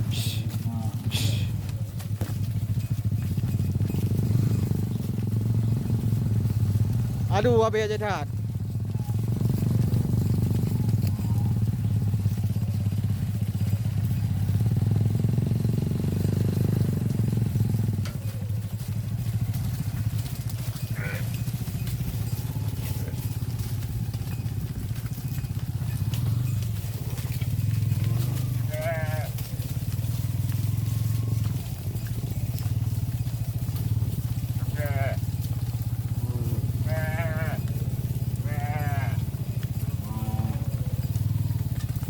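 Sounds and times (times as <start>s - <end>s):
animal bleats: 0.0s - 1.8s, 20.6s - 23.4s, 25.8s - 29.6s, 34.5s - 35.6s, 36.2s - 41.1s
small engine running: 0.0s - 42.0s.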